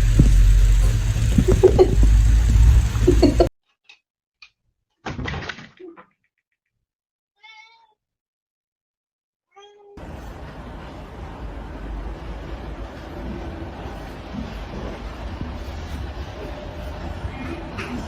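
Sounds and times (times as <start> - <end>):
heavy low rumble: 0.0 - 3.5, 10.0 - 18.0
cat crying: 7.4 - 8.0
cat meowing: 7.4 - 8.0.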